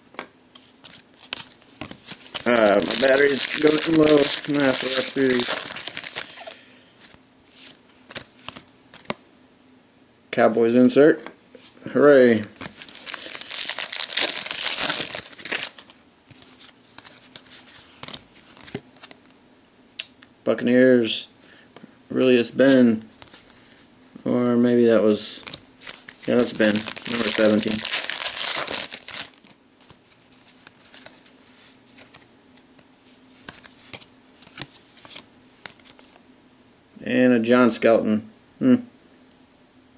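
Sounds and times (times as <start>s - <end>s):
trading cards flipped by hand: 0.5s - 9.2s, 12.6s - 19.2s, 25.4s - 32.3s, 33.4s - 36.2s
foil wrapper crinkling: 0.8s - 6.6s, 12.6s - 19.1s, 25.4s - 31.2s.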